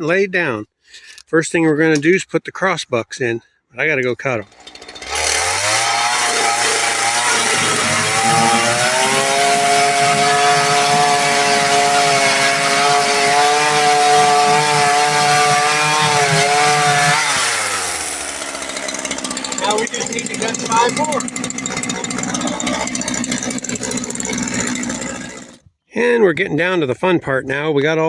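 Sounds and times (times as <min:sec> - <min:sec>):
chainsaw cutting wood: 0:04.4 - 0:25.6.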